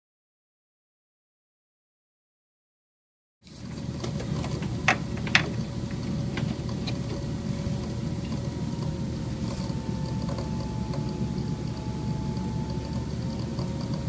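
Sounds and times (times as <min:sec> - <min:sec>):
pump humming: 0:03.4 - 0:14.0.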